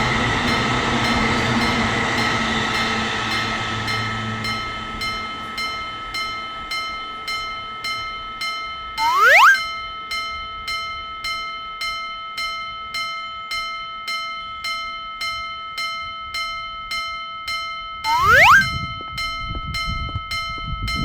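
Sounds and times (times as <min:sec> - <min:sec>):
level-crossing warning bell: 0:00.3 - 0:21.0
short rising swoop: 0:18.1 - 0:18.7.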